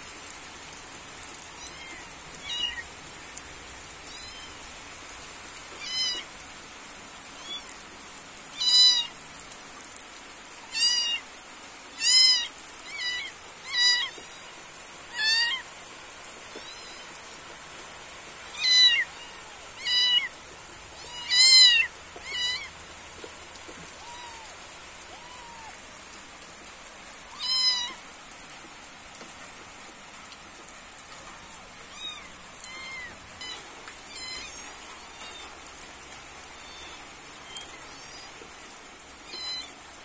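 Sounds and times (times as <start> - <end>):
rain falling: 0.0 - 40.0
animal calling: 31.9 - 35.5.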